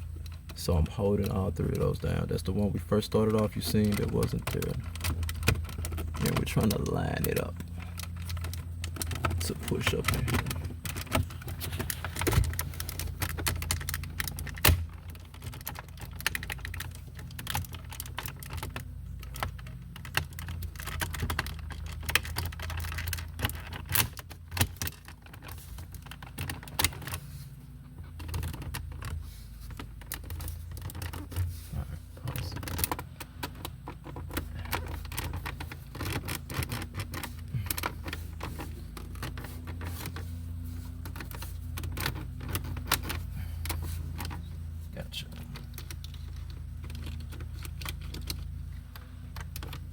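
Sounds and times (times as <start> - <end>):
steady low hum: 0.0 - 49.9
hard plastic clicks and rattles: 0.1 - 44.6, 45.3 - 49.9.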